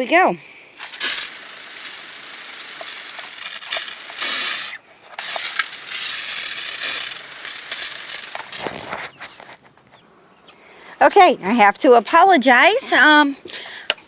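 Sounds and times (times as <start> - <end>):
water hissing from spray wand: 0.8 - 8.8.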